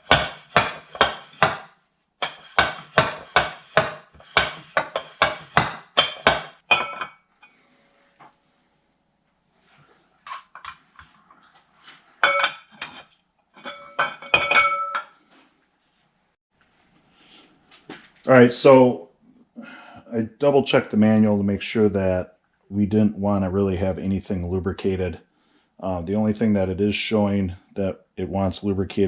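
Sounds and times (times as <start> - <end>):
metal tools clinking: 6.0 - 7.6, 12.2 - 15.2.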